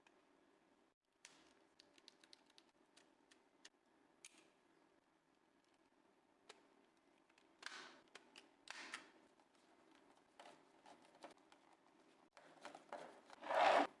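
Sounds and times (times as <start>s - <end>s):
controller scraping rubs: 12.8s - 13.9s.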